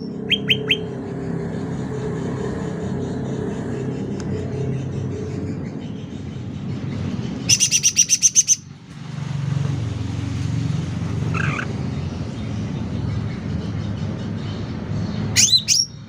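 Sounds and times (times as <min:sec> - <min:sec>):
songbird calling sharp high notes: 0:00.0 - 0:00.9, 0:07.5 - 0:08.7
steady low rumble: 0:00.0 - 0:15.4.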